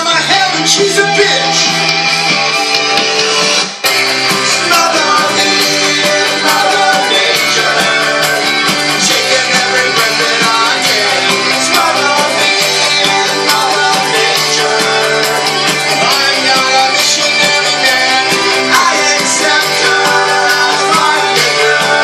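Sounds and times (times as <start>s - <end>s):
rock band playing: 0.0s - 22.0s.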